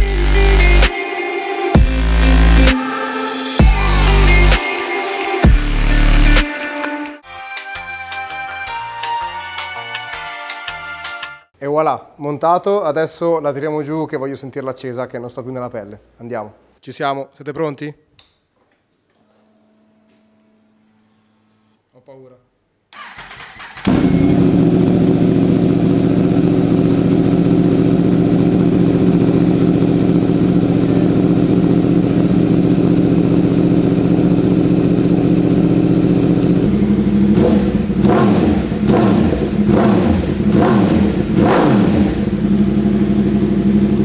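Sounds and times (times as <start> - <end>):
motorcycle throttle blips: 23.0 - 44.0
motorcycle engine idling: 23.6 - 44.0.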